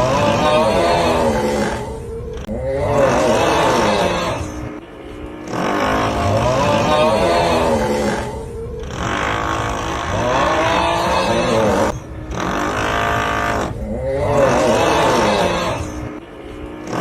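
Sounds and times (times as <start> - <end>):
long groaning snore vocal: 0.0 - 4.8, 5.4 - 17.0
drilling noise: 5.3 - 17.0.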